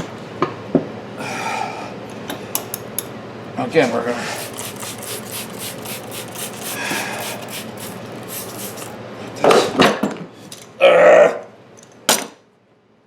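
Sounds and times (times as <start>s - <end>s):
tire tools rasping on rim: 4.2s - 8.9s.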